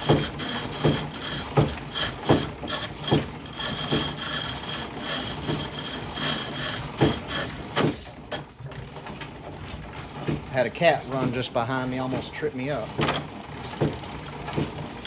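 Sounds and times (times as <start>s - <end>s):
cutting tool scraping spinning wood: 0.0s - 8.5s
treadle knocking: 0.0s - 9.1s, 10.1s - 15.0s.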